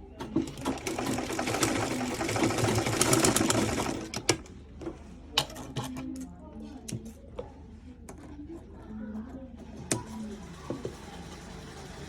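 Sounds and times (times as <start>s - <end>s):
sewing machine stitching: 0.2s - 4.4s, 10.0s - 12.0s.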